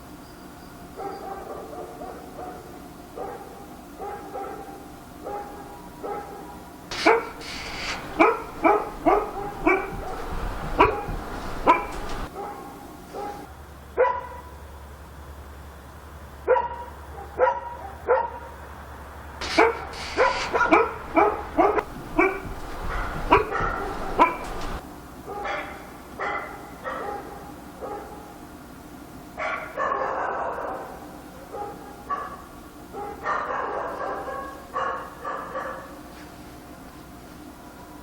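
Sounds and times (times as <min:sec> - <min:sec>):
dog barking: 0:01.0 - 0:14.5, 0:16.4 - 0:18.5, 0:19.4 - 0:28.4, 0:29.4 - 0:36.0.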